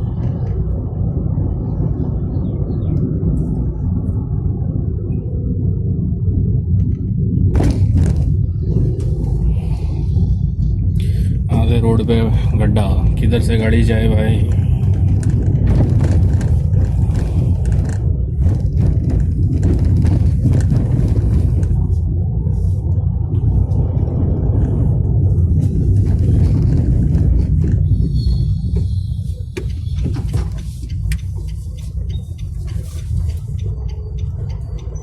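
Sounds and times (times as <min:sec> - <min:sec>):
engine and tyre rumble: 0:00.0 - 0:35.0
car cabin knocks and rattles: 0:29.5 - 0:31.5.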